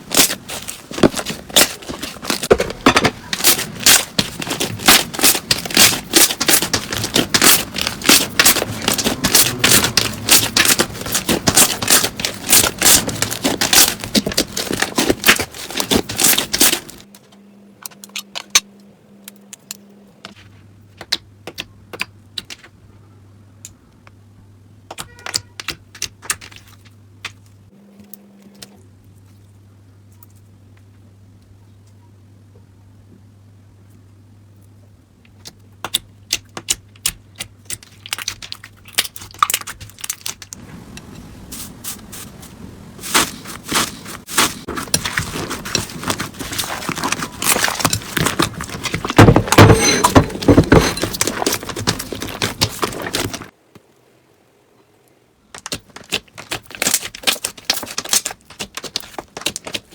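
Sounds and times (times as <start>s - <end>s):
faint low hum: 0.0s - 59.9s
slime crackling and popping: 3.2s - 17.1s, 35.9s - 40.6s, 43.0s - 49.2s, 55.6s - 59.9s.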